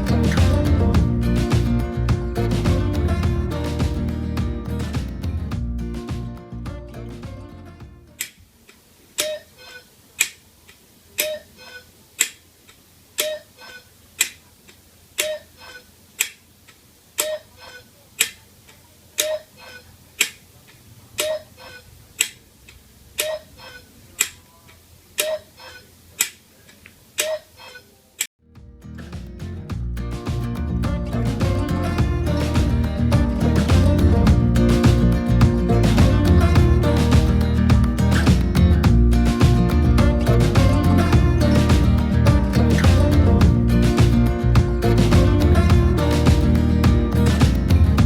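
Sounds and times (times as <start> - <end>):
clock tick-tock ticking: 22.2 - 23.5.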